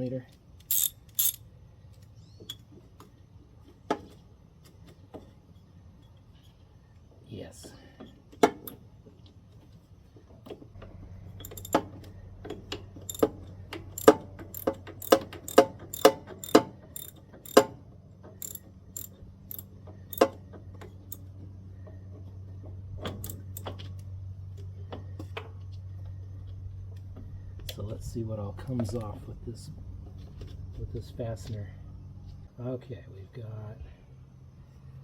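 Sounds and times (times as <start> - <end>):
wrench clicking: 0.6 - 1.4, 11.4 - 11.8, 13.1 - 17.7, 18.4 - 20.3, 23.2 - 23.7.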